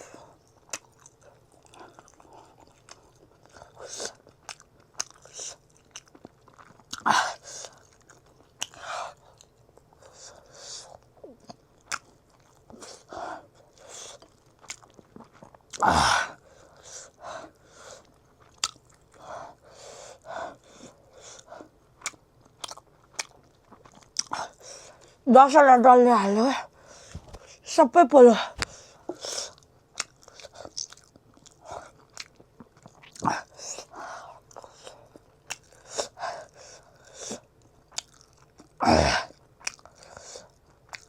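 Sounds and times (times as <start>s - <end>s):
chewing and crunching food: 0.0s - 27.7s, 28.4s - 41.0s.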